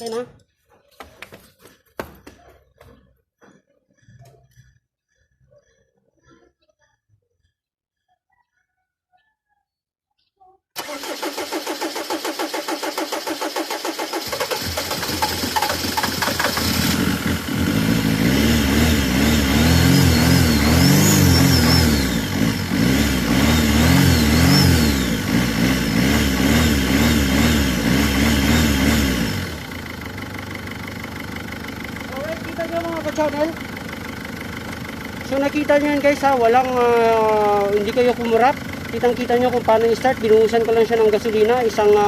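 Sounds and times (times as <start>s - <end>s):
diesel engine cranking: 10.8s - 42.0s
engine revving and idling: 10.8s - 42.0s.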